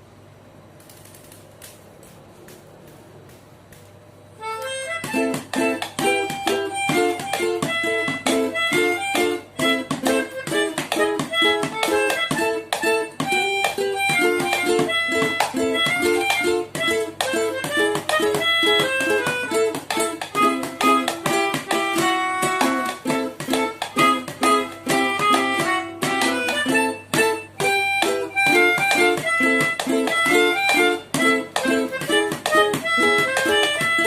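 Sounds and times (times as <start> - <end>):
ukulele strumming: 2.5 - 34.0.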